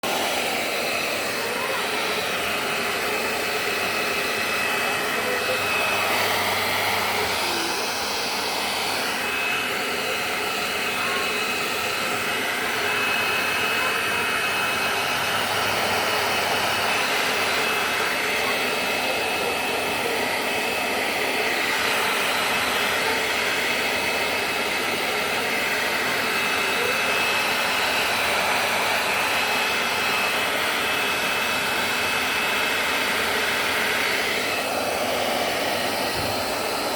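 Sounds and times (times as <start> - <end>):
hair dryer blowing: 0.0 - 36.9.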